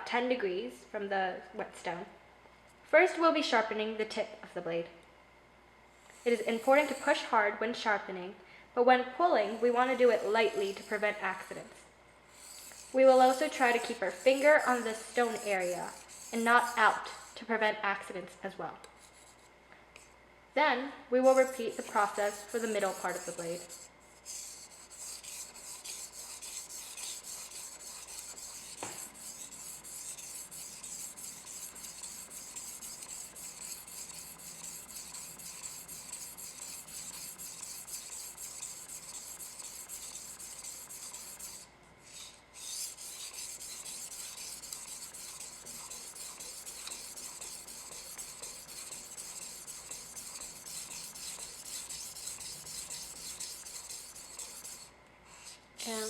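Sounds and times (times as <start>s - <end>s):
knife scraping on whetstone: 6.1s - 7.2s, 9.5s - 11.6s, 12.3s - 17.4s, 21.3s - 56.0s.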